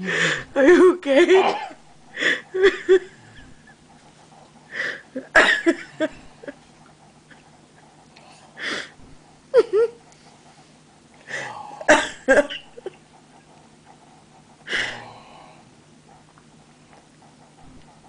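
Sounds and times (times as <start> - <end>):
person coughing: 0.7 - 1.8, 5.2 - 6.2, 11.8 - 12.7.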